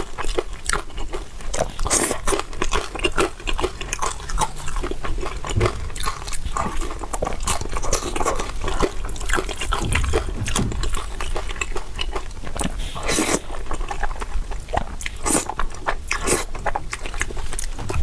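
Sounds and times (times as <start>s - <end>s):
wet chewing and mouth smacking: 0.0s - 18.0s.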